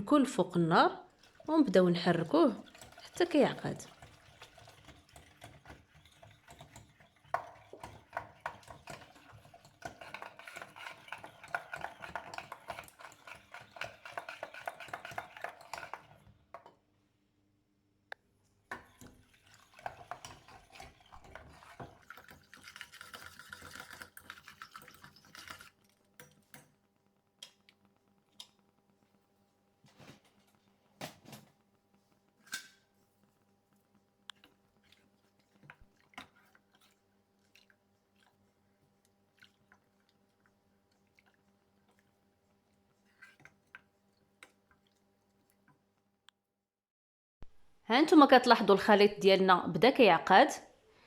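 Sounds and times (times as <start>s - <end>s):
utensil scraping and clicking on pot: 2.3s - 16.8s, 18.7s - 26.8s, 27.4s - 28.6s, 34.3s - 45.8s.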